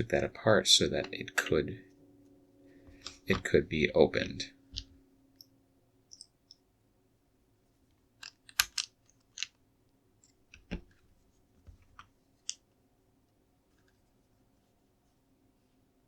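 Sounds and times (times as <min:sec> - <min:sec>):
plastic pieces clicking together: 0:08.2 - 0:09.6.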